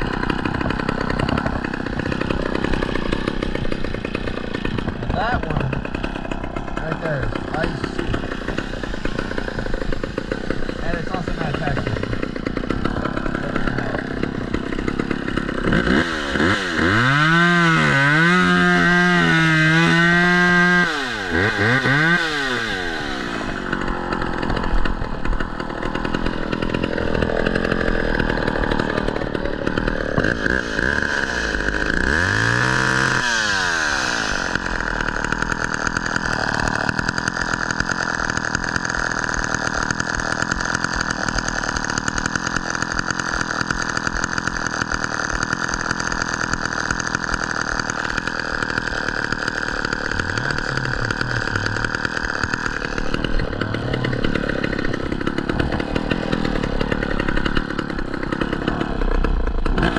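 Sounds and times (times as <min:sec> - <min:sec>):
chainsaw revving and idling: 0:00.0 - 0:59.9.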